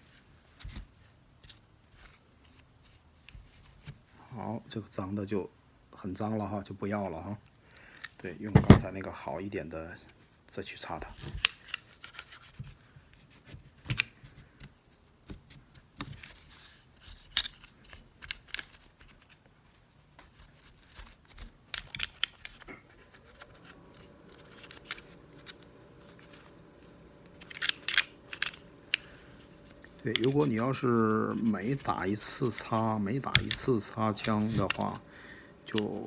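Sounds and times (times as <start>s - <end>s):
faint steady hum: 0.0s - 36.0s
cloth scrubbing a pistol frame: 22.8s - 35.1s.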